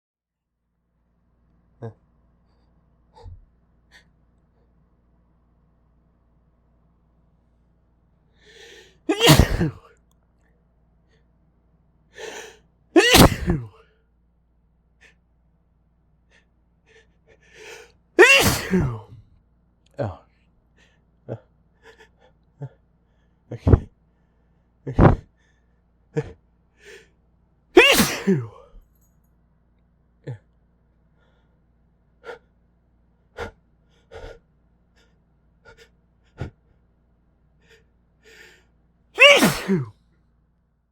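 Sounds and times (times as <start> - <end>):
quiet breaths: 1.7 - 9.1, 9.8 - 12.8, 13.6 - 18.2, 19.0 - 27.5, 28.4 - 39.0
gasping in-breath: 8.4 - 9.8, 12.2 - 12.6, 16.3 - 18.0, 20.8 - 27.2, 33.4 - 34.4, 35.0 - 36.7, 37.6 - 39.9
person sneezing: 9.1 - 9.9, 12.2 - 13.8, 17.6 - 19.2, 23.6 - 23.9, 24.9 - 25.2, 27.8 - 28.8, 33.4 - 34.4, 39.2 - 39.9.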